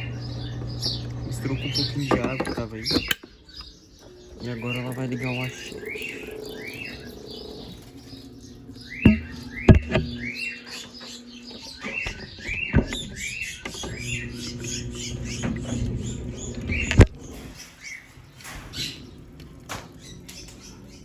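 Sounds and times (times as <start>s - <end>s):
small bird chirping: 0.0s - 21.0s
washing machine hum: 0.0s - 21.0s
sharp knocks: 9.0s - 10.2s.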